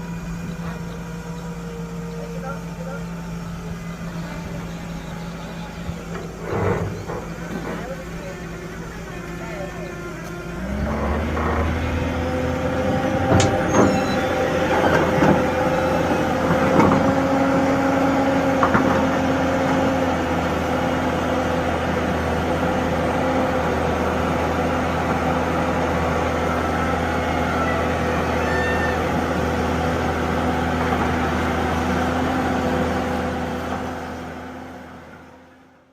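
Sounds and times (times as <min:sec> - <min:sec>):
heavy diesel engine running: 0:00.0 - 0:35.9.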